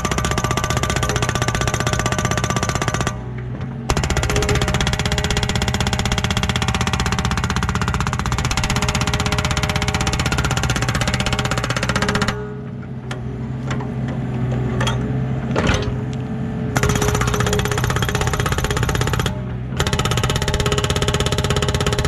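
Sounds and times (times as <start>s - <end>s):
hydraulic breaker pounding rock: 0.0s - 12.6s, 16.8s - 22.0s
metal knocks and clanks: 13.7s - 16.1s.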